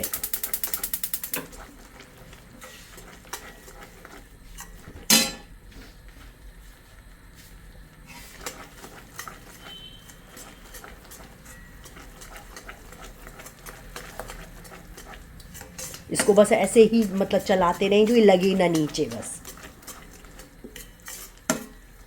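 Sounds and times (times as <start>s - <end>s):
fast even clicking: 0.0s - 1.4s
metal spoon scraping a pan: 0.0s - 5.5s, 8.1s - 22.0s
utensil clanking on pan: 4.6s - 5.5s, 10.4s - 21.8s.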